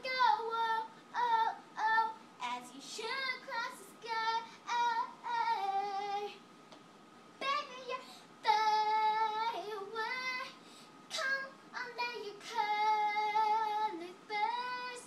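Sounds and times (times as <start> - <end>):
girl singing high notes: 7.4 - 15.0.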